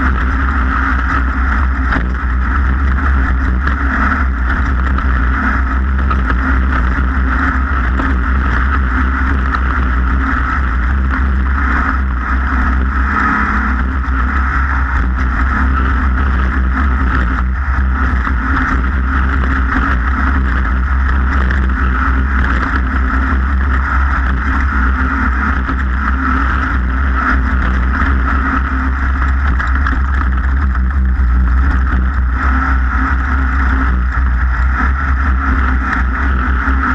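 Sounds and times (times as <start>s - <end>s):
off-road vehicle engine rumble: 0.0s - 36.9s.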